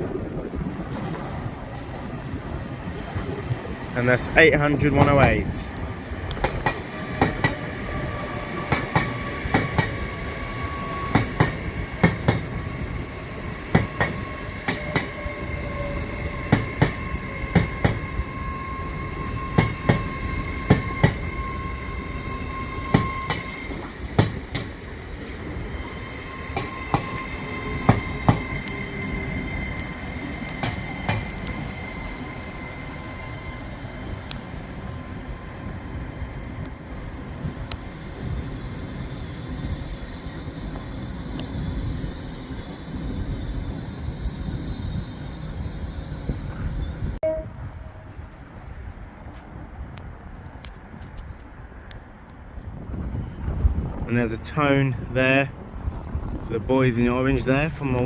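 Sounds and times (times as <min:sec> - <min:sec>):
train rumble: 0:00.0 - 0:58.0
train wheels clicking over rail joints: 0:04.8 - 0:12.7, 0:13.6 - 0:15.3, 0:16.4 - 0:18.1, 0:19.5 - 0:21.3, 0:22.8 - 0:32.2
high thin wheel squeal: 0:13.8 - 0:23.9, 0:25.7 - 0:30.8, 0:38.0 - 0:47.2.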